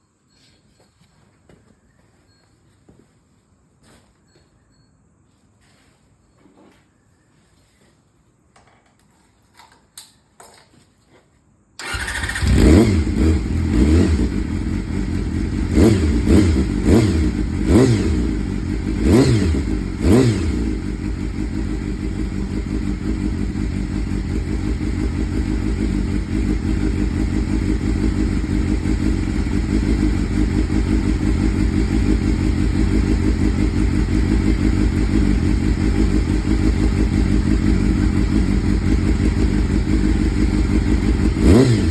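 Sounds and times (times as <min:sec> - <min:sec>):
motorcycle engine revving and idling: 0:11.8 - 0:41.9.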